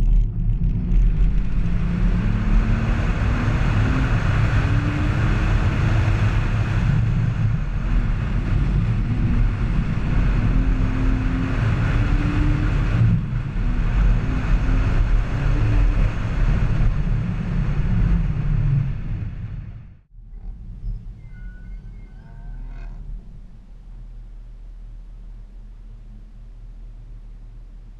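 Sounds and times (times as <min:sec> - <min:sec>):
car engine revving: 0:00.0 - 0:20.7.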